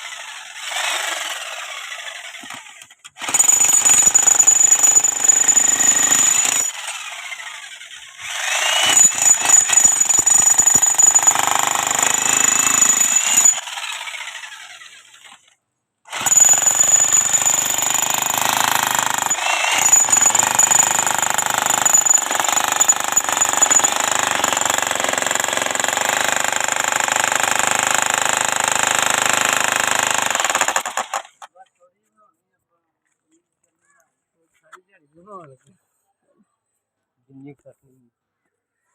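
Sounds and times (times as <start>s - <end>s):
power tool whining: 0.0s - 15.5s, 16.1s - 26.6s.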